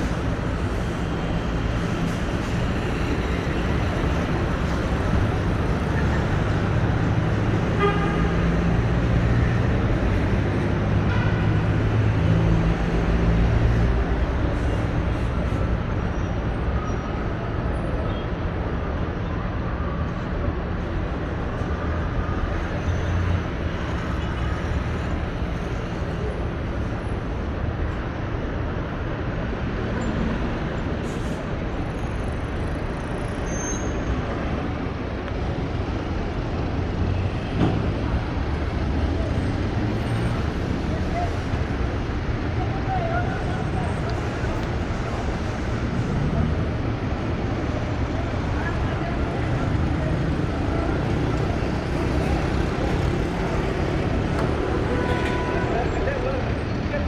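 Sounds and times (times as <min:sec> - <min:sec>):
passing cars rumbling: 0:28.5 - 0:57.0.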